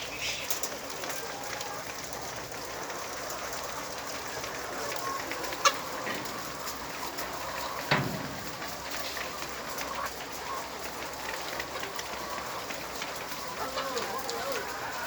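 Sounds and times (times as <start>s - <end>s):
hens clucking: 0.0s - 15.0s
hen call: 13.4s - 15.0s.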